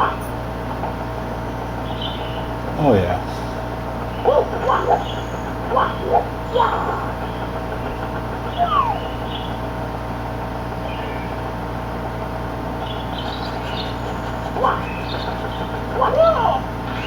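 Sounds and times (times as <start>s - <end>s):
video game chirps: 8.4s - 9.6s.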